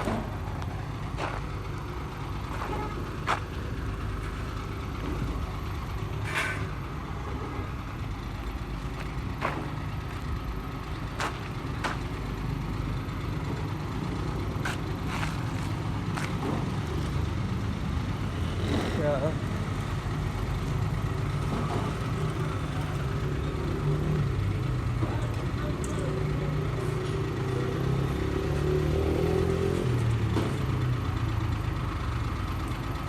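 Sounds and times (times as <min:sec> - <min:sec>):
heavy machinery rumbling: 0:00.0 - 0:28.5.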